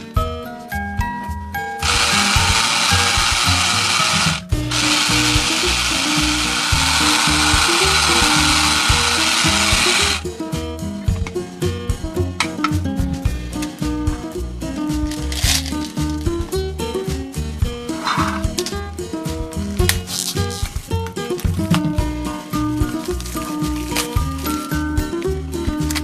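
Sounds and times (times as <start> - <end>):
upbeat background music: 0.0 - 26.0
toy appliance motor whirring: 1.8 - 10.2.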